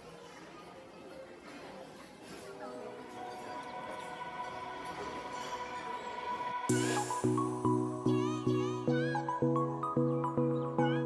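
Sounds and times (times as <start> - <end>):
soft background music: 2.8 - 11.0
repeated music chord: 3.8 - 11.0.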